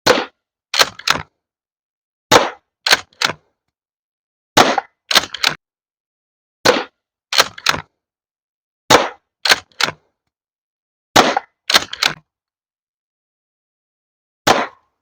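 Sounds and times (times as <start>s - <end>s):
shotgun shots: 0.1s - 1.0s, 2.3s - 3.0s, 4.6s - 5.4s, 8.9s - 9.7s, 11.2s - 12.1s, 14.5s - 14.8s
shotgun pump clacks: 0.1s - 1.3s, 2.3s - 3.4s, 4.6s - 5.6s, 6.7s - 7.9s, 8.9s - 10.0s, 11.2s - 12.2s.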